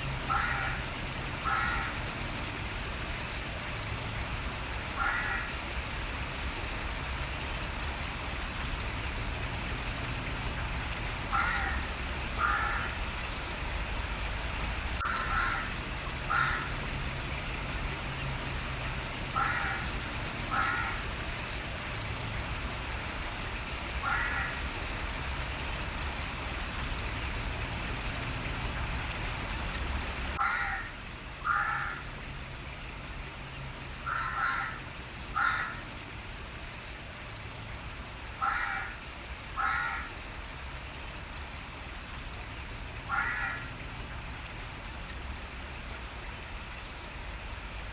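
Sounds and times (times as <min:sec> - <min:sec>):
running water rushing: 0:00.0 - 0:47.9
crow cawing: 0:00.3 - 0:00.8, 0:01.4 - 0:02.0, 0:05.0 - 0:05.6, 0:11.3 - 0:11.8, 0:12.4 - 0:12.9, 0:15.0 - 0:16.7, 0:19.4 - 0:19.9, 0:20.5 - 0:21.0, 0:24.0 - 0:24.6, 0:30.4 - 0:32.1, 0:34.1 - 0:34.8, 0:35.4 - 0:35.8, 0:38.4 - 0:39.0, 0:39.6 - 0:40.1, 0:43.1 - 0:43.7.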